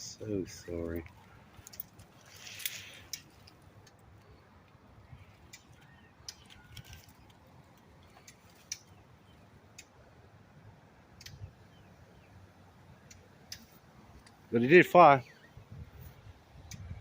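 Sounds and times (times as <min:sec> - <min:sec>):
bird tick and click calls: 0:00.6 - 0:10.2, 0:11.0 - 0:14.6, 0:15.2 - 0:17.0
bird alarm tick: 0:05.1 - 0:06.8, 0:08.0 - 0:10.0.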